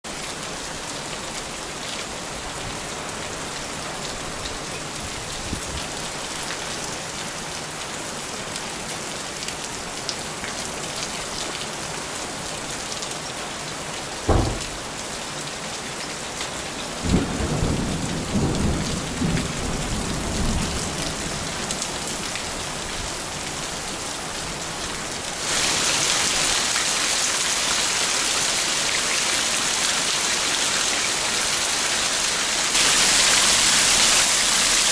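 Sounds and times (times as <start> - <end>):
heavy rain falling: 0.1 - 34.9
sharp thunderclap: 14.3 - 15.0
rolling thunder rumbling: 14.3 - 15.1.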